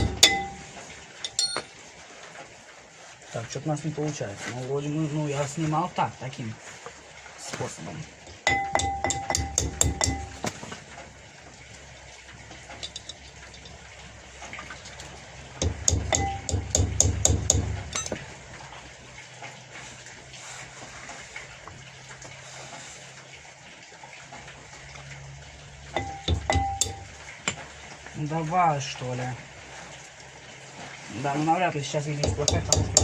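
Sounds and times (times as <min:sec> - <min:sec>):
hammer tapping metal wrench: 0:00.0 - 0:00.6, 0:01.2 - 0:01.7, 0:08.5 - 0:10.4, 0:12.8 - 0:13.7, 0:15.6 - 0:18.2, 0:26.0 - 0:27.6, 0:32.2 - 0:33.0.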